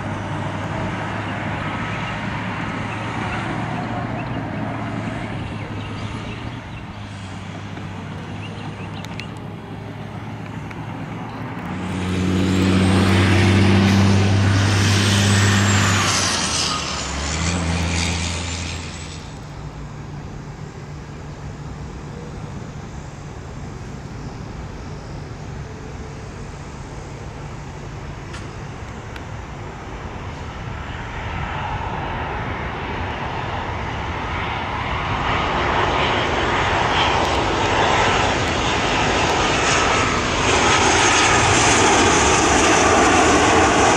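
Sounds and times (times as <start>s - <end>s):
vehicle engine passing by: 0.0s - 20.2s
jet airliner engine: 0.0s - 43.9s.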